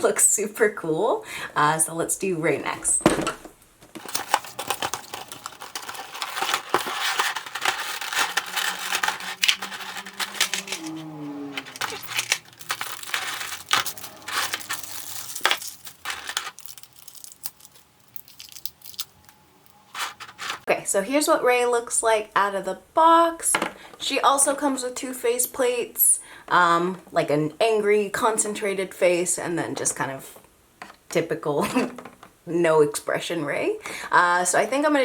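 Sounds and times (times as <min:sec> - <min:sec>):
plastic packaging crinkling: 0:03.8 - 0:20.7.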